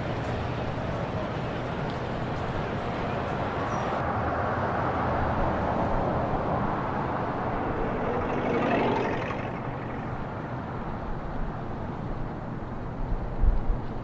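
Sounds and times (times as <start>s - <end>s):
traffic noise: 0.0s - 14.0s.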